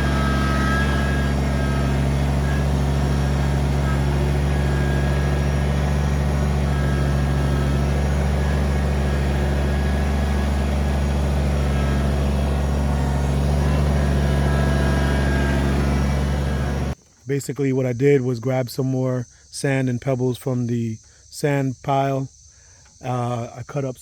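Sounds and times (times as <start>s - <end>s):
tractor diesel engine running: 0.0s - 17.0s.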